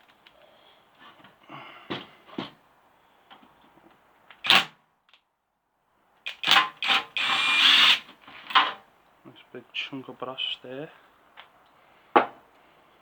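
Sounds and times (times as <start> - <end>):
knocks and clatter of parts: 8.4 - 8.8.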